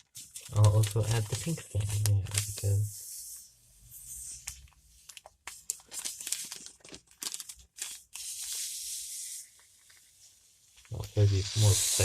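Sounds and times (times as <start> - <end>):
plastic packet crackling: 0.0 - 2.7, 4.4 - 8.6
sand pouring hiss: 8.2 - 9.6, 11.1 - 12.0.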